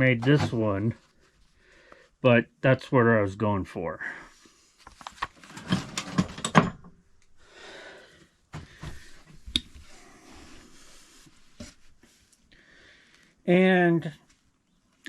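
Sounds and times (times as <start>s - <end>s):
soft rustle: 8.9s - 12.5s.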